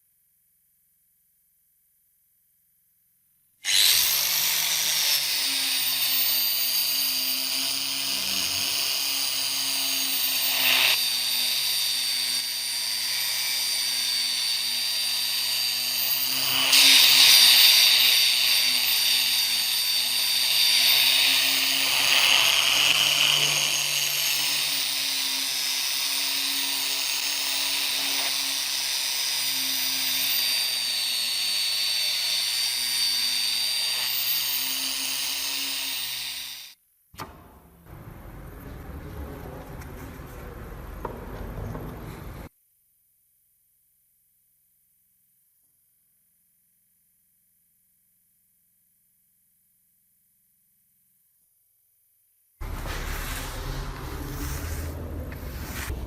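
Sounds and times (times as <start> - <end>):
electric power tool whining: 3.7 - 36.8.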